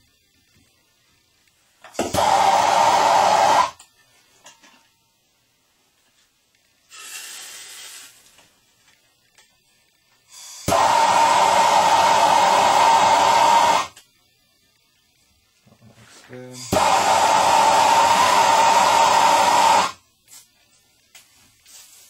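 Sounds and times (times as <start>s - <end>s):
torch flame hissing: 1.8s - 3.8s, 6.8s - 8.8s, 10.3s - 14.0s, 16.3s - 20.6s.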